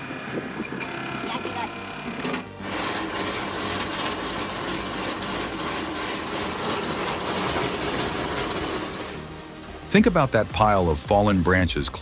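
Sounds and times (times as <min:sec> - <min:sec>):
machine rattling clatter: 0:00.6 - 0:12.0.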